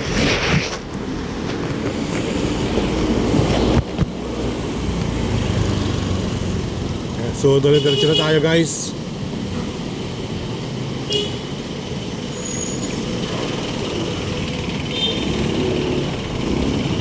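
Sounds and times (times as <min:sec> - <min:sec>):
vehicles passing: 0:00.0 - 0:17.0
car horn toot: 0:07.7 - 0:08.4, 0:11.1 - 0:11.5, 0:14.9 - 0:15.3.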